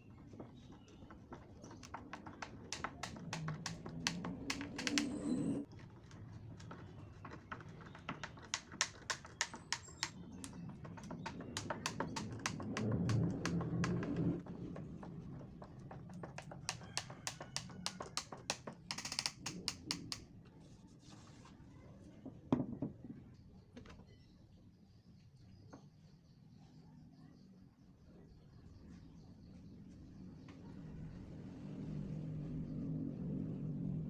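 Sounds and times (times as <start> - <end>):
sharp clicks and light taps: 1.8 - 5.2, 8.1 - 14.4, 15.9 - 20.3.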